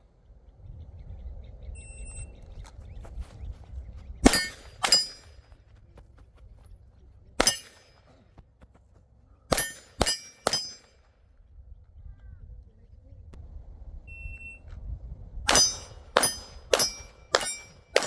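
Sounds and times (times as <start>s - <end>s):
pistol shots: 4.2s - 5.3s, 7.4s - 7.9s, 9.5s - 10.9s, 15.5s - 18.0s
metallic ring of bullets on steel: 4.2s - 5.5s, 7.4s - 8.2s, 9.5s - 11.1s, 15.5s - 18.0s.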